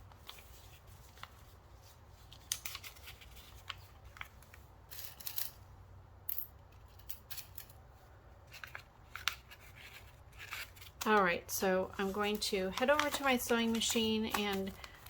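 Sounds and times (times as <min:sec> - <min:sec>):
paper rustling: 0:00.0 - 0:04.6, 0:11.9 - 0:15.0.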